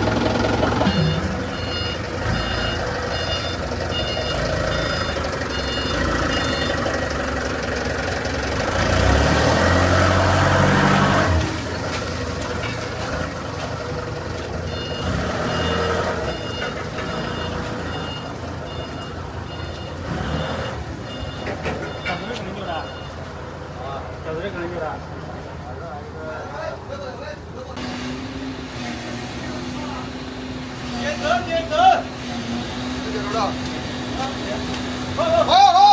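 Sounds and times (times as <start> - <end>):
reversing alarm beeping: 0.0 - 7.2, 14.6 - 23.3
diesel machine engine running: 0.0 - 35.5.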